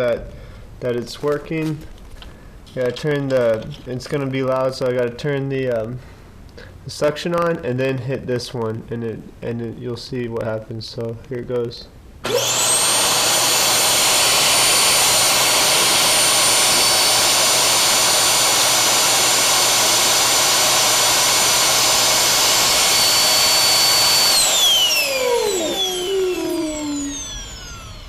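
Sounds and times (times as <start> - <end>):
vacuum cleaner motor whine: 12.2 - 28.0.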